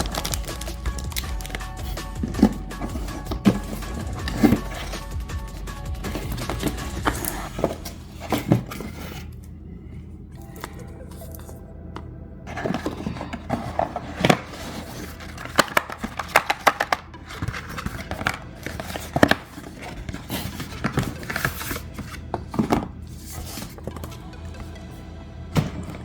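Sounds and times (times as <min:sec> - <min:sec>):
cardboard and plastic packaging handled: 0:00.0 - 0:11.6, 0:12.5 - 0:24.8.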